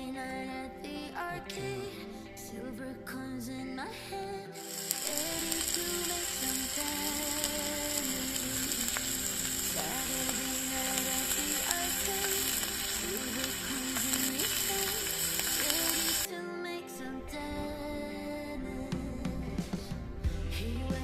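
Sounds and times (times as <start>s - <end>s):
gentle background music: 0.0s - 21.0s
campfire crackling and hissing: 4.5s - 16.3s.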